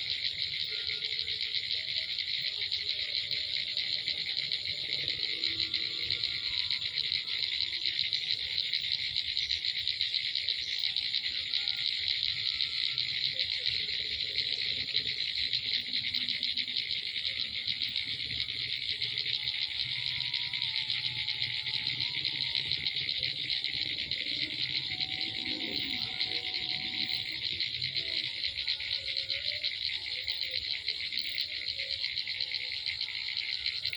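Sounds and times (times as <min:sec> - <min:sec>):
insects chirring: 0:00.0 - 0:33.9.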